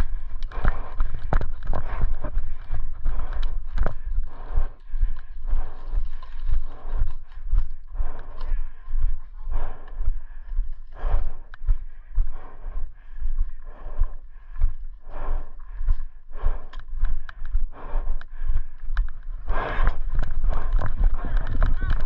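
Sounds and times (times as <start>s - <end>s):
footsteps: 13.4s - 22.0s.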